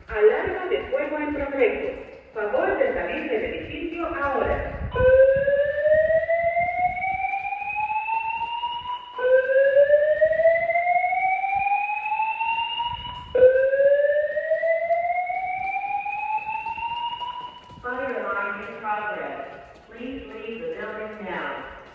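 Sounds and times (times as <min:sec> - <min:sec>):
fire alarm whoop tone: 0:04.9 - 0:17.8.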